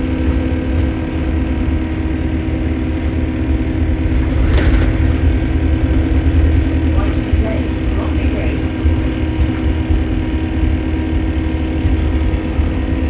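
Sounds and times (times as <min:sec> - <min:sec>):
diesel bus engine droning: 0:00.0 - 0:13.0.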